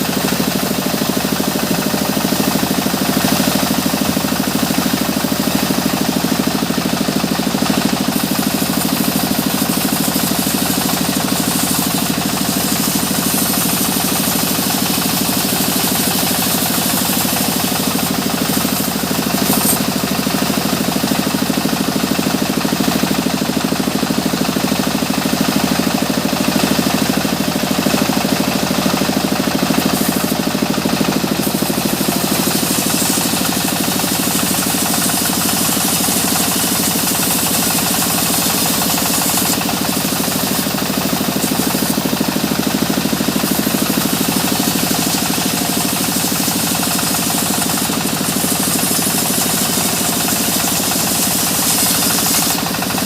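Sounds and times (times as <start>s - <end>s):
saw hissing through wood: 0.0s - 53.0s
sawmill engine running: 0.0s - 53.0s.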